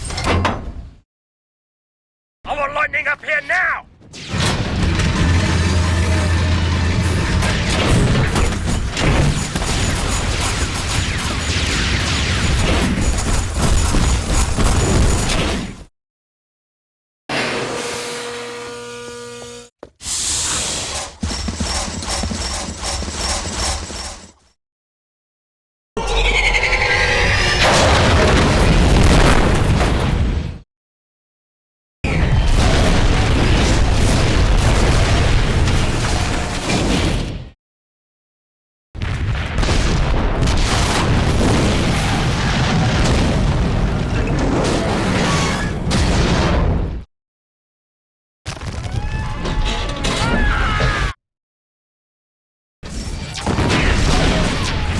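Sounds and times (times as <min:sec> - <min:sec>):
crackling blasts: 0:04.1 - 0:15.7, 0:27.7 - 0:30.5, 0:39.0 - 0:44.6
mechanical servo whine: 0:04.9 - 0:07.6, 0:17.8 - 0:21.1
deep continuous rumble: 0:04.9 - 0:09.0.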